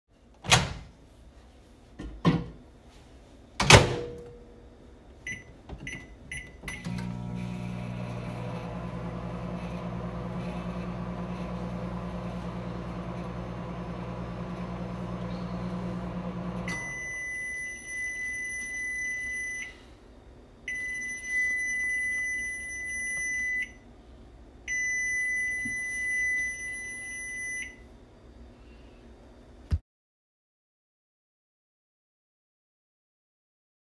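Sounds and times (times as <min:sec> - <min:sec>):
microwave humming: 0:05.2 - 0:19.8.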